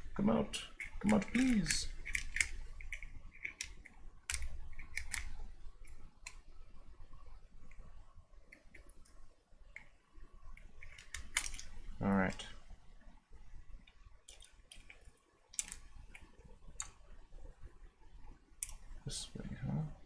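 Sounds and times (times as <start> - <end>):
hard plastic clicks and scrapes: 0.8 - 6.4, 10.6 - 11.8.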